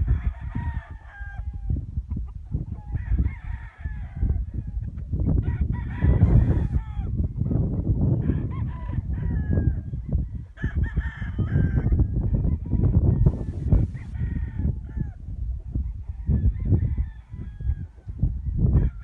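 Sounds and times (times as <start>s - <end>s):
steady low rumble: 13.2s - 15.8s.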